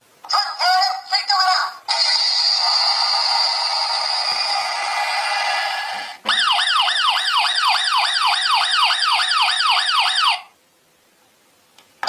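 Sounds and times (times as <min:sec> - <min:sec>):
toy electronic siren wailing: 0:06.3 - 0:10.5.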